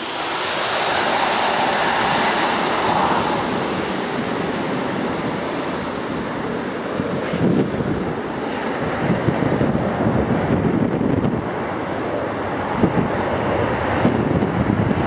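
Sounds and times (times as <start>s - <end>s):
jet airliner flying by: 0.0s - 15.0s.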